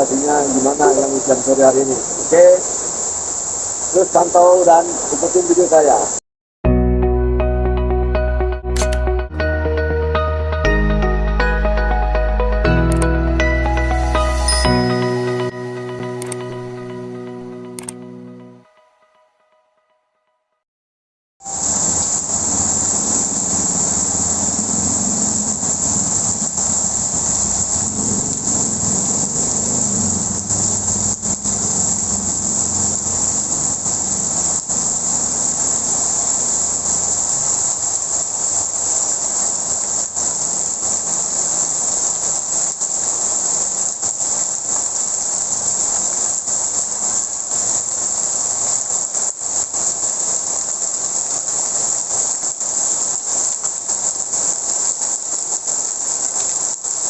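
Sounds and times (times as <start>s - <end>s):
heavy rain pouring: 0.0s - 6.2s, 21.5s - 57.0s.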